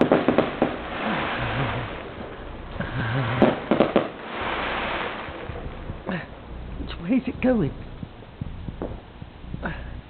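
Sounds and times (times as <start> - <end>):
sharp firework pops: 0.0 - 2.4, 3.3 - 6.1, 7.9 - 9.1
distant fireworks rushing: 0.0 - 10.0.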